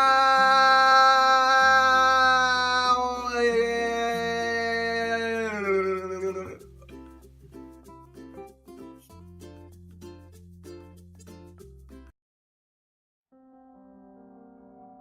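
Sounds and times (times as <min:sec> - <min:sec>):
bass line: 0:00.0 - 0:12.0.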